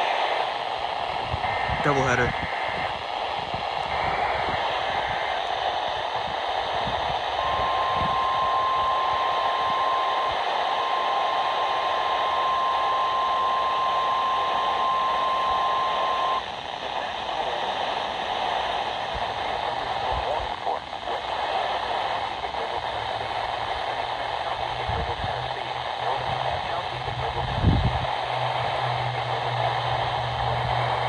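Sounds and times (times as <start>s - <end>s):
radio static hiss: 0.0s - 31.0s
steady alarm tone: 7.4s - 16.4s.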